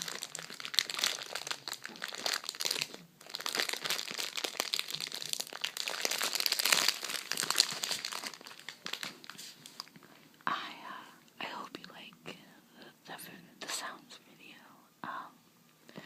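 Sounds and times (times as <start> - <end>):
crinkly material crumpling: 0.0 - 10.2.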